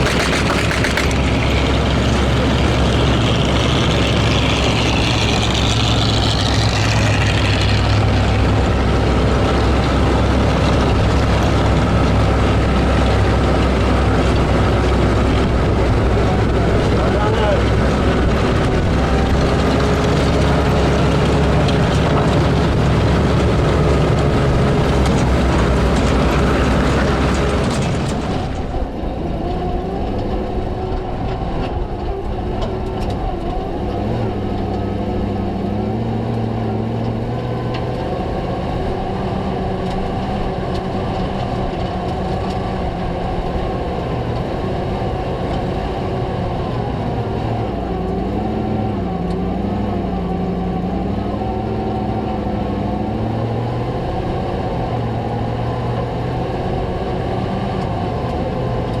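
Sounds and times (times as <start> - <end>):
steel tracks clattering on gravel: 0.0 - 28.8
engines running: 0.0 - 59.0.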